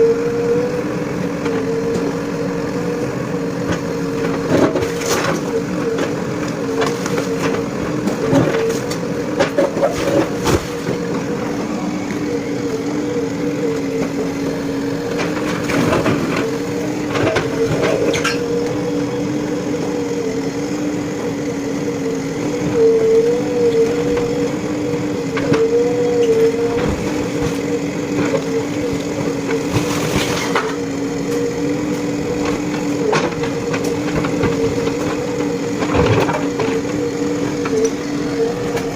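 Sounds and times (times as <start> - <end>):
diesel engine running under load: 0.0 - 38.9.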